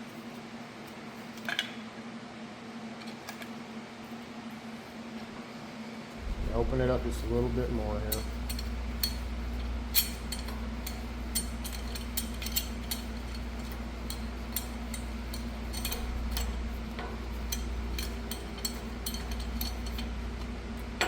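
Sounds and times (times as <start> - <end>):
steady low hum: 5.5 - 21.0
metal clicks and clinks: 9.9 - 16.6, 17.5 - 20.1.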